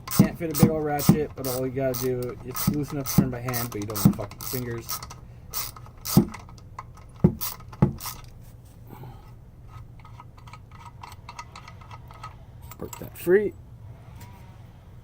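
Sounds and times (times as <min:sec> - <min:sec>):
ratchet clicking: 0:00.0 - 0:08.3, 0:10.0 - 0:13.2.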